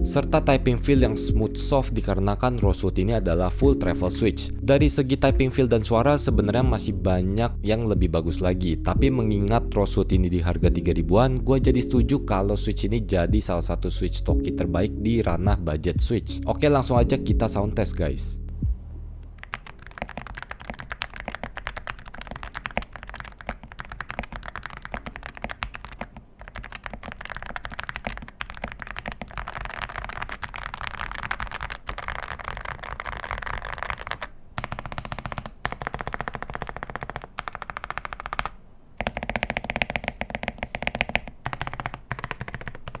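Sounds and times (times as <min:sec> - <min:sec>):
mechanical keyboard typing: 0:19.4 - 0:43.0.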